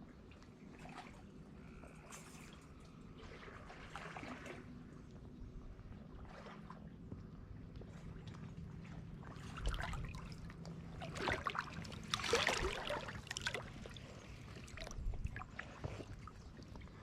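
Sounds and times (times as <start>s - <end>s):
faint low hum: 0.0s - 17.0s
water splashing: 2.2s - 4.8s, 8.9s - 16.8s.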